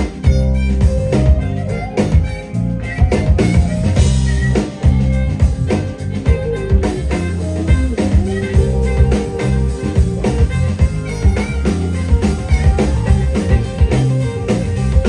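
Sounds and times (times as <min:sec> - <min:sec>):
lead guitar: 0:00.0 - 0:15.0
live blues band playing: 0:00.0 - 0:15.0.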